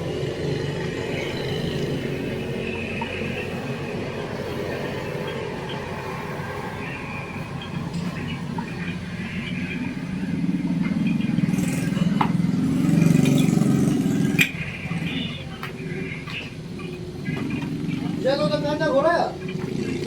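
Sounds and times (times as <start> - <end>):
vehicle engine rumbling: 0.0 - 20.0.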